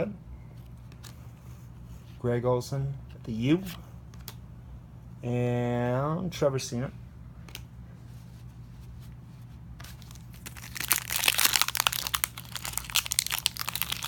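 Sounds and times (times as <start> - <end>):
steady low hum: 0.0 - 14.0
plastic wrapper crinkling and tearing: 9.8 - 14.0.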